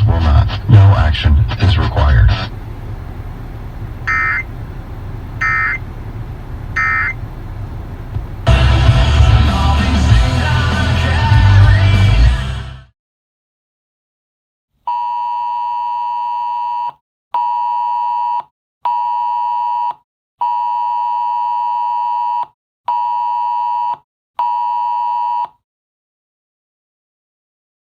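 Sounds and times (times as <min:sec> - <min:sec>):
phone two-tone alert beeps: 0:04.1 - 0:04.4, 0:05.4 - 0:05.8, 0:06.8 - 0:07.2.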